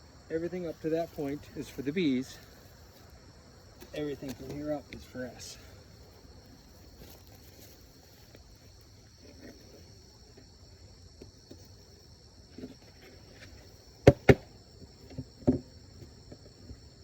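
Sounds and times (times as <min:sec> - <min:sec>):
high insect trill: 0:00.0 - 0:17.0
wooden boxes knocking together: 0:14.0 - 0:14.6.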